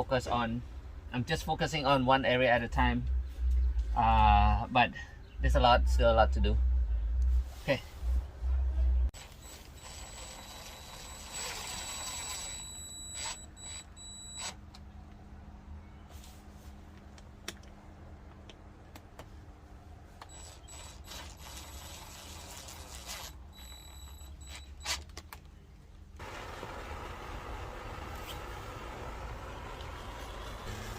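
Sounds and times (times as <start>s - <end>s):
low hum: 2.3s - 13.2s.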